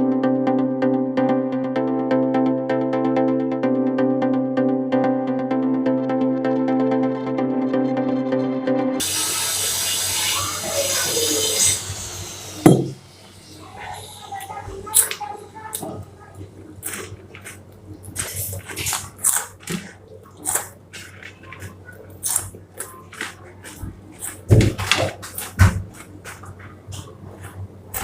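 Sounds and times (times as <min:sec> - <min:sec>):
heavy thump: 0:12.7 - 0:13.0
crunchy chewing: 0:14.4 - 0:28.0.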